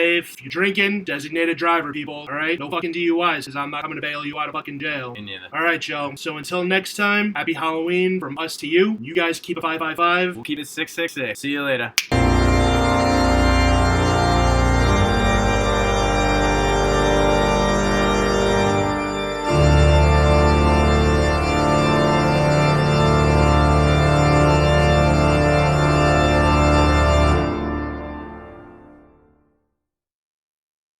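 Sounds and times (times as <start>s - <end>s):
organ sustained chords: 12.2s - 29.2s.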